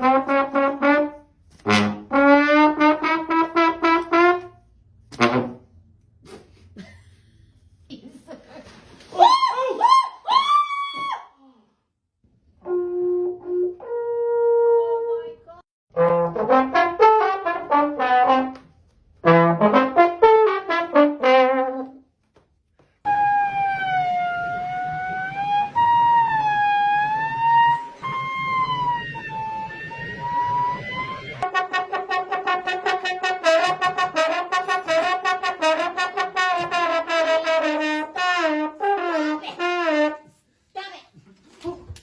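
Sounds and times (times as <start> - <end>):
brass-like sound effect notes: 0.0 - 5.7, 12.6 - 15.1, 15.9 - 18.6, 19.2 - 22.0, 23.1 - 40.3.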